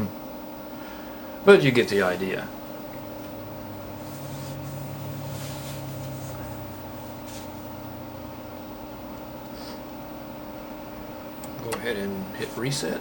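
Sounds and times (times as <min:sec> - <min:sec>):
computer hum and fan: 0:00.0 - 0:13.0
low drone: 0:03.0 - 0:10.4.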